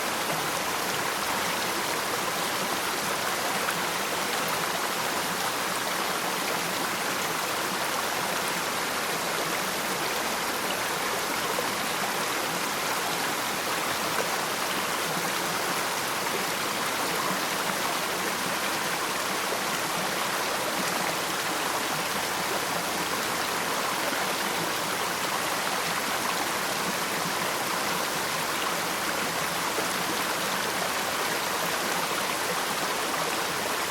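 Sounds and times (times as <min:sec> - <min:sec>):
waterfall rushing and splashing: 0:00.0 - 0:33.9.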